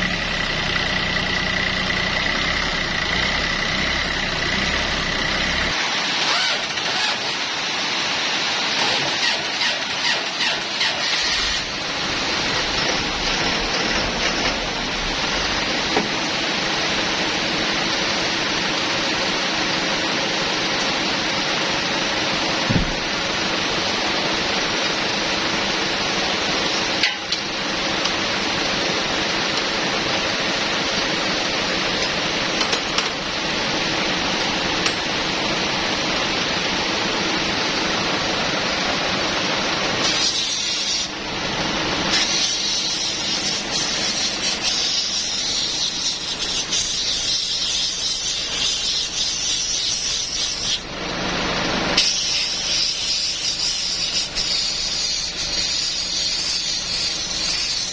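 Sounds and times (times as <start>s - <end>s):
loud hissing spray: 0.0s - 20.4s, 37.5s - 57.9s.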